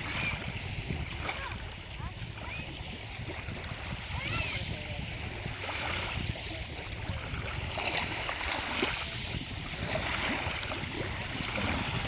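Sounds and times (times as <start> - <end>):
stream water flowing over stones: 0.0 - 12.0.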